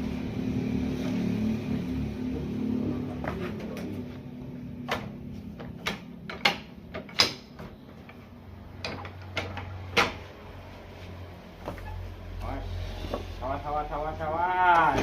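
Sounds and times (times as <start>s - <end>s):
sharp knocks: 8.8s - 10.3s.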